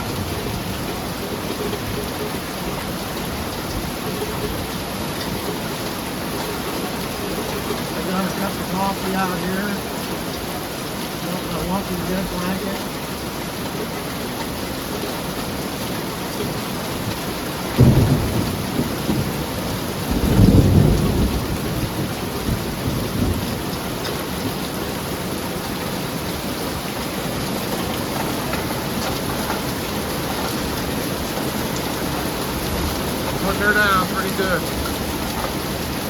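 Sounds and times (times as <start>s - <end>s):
heavy rain on a metal roof: 0.0s - 36.0s
thunder: 17.8s - 23.6s.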